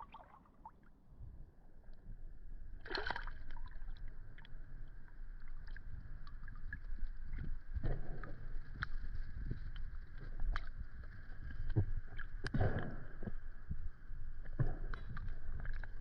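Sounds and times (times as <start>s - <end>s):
water sloshing and splashing: 0.0s - 1.0s, 2.8s - 12.8s
low steady rumble: 0.0s - 16.0s.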